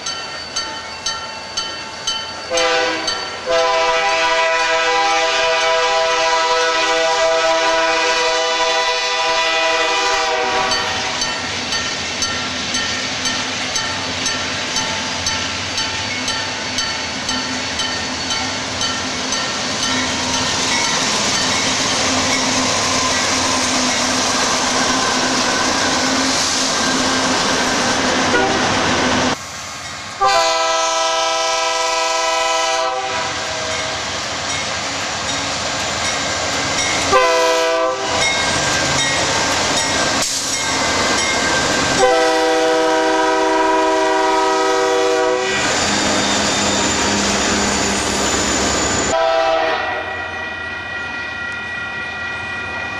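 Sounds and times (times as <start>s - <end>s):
train rumble and wheel clatter: 0.0s - 52.9s
locomotive air horn blasts: 2.5s - 11.2s, 28.3s - 28.7s, 30.2s - 33.8s, 37.1s - 38.3s, 42.0s - 45.7s, 49.1s - 50.5s.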